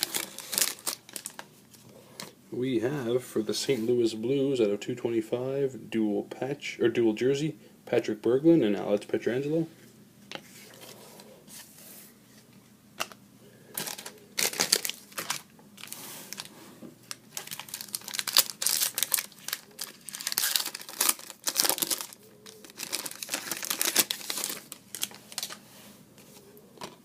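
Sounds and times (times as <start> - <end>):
cards and plastic packaging crinkling: 0.0 - 1.5, 13.0 - 25.6.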